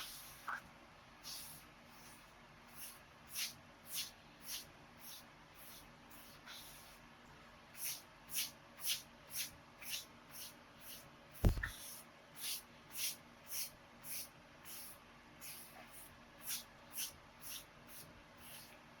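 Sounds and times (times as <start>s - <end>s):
sharp knock: 11.4s - 11.7s.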